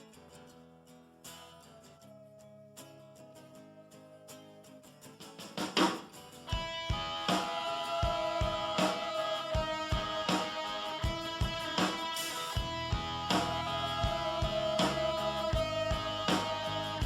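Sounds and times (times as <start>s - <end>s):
guitar-led song: 0.0s - 17.0s
drum beat: 5.6s - 17.0s.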